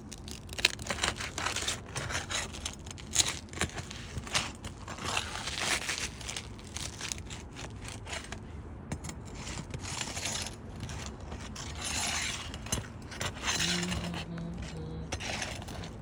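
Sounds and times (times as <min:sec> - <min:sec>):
crowbar scraping under shingles: 0:00.3 - 0:16.0.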